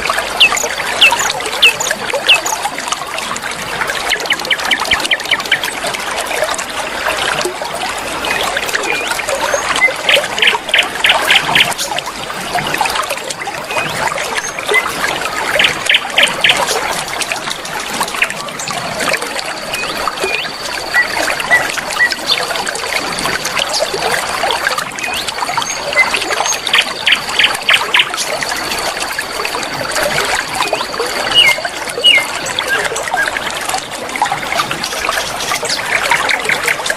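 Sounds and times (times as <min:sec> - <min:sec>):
river flowing over stones: 0:00.0 - 0:36.9
birds chipping and chirping: 0:00.3 - 0:02.7, 0:04.0 - 0:05.7.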